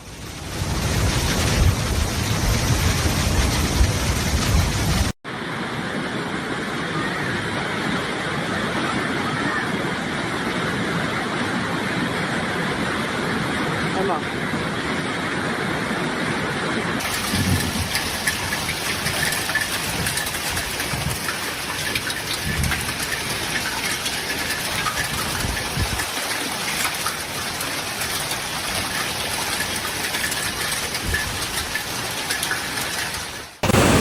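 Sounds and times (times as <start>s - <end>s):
heavy rain pouring: 0.0s - 14.1s, 16.9s - 34.0s
low rumbles: 33.6s - 34.0s.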